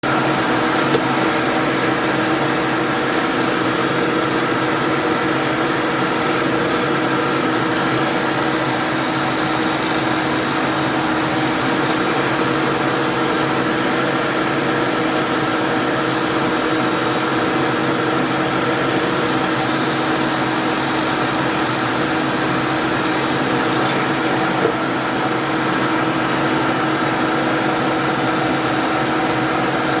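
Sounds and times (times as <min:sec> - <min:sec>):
power tool motor running: 0:07.6 - 0:12.8, 0:19.3 - 0:24.6.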